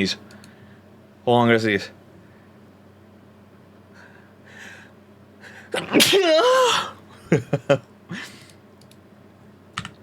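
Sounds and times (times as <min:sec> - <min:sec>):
man sneezing: 0:05.7 - 0:07.0.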